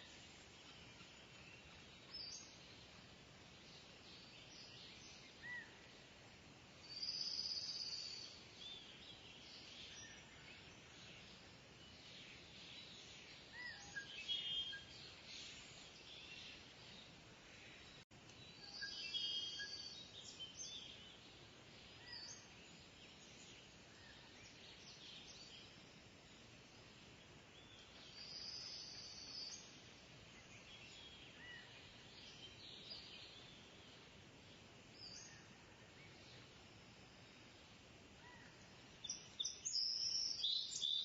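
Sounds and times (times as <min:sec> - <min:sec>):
faint outdoor background: 0:00.0 - 0:41.0.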